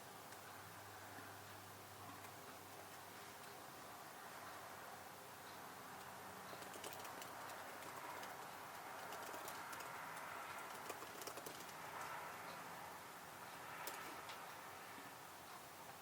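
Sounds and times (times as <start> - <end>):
faint background hiss: 0.0 - 16.0.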